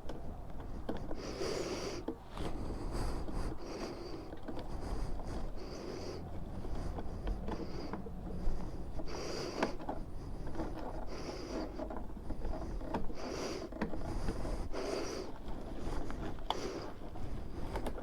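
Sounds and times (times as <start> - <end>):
scratchy rustling: 0.6 - 18.0.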